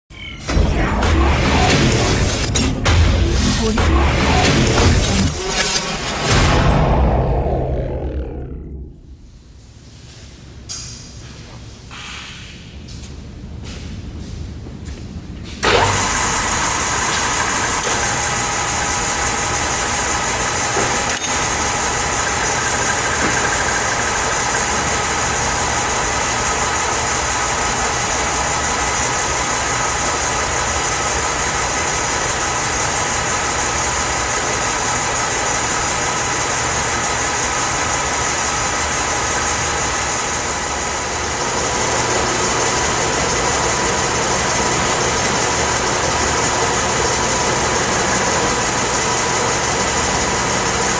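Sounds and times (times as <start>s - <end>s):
lathe running with mechanical whine: 15.6s - 50.9s.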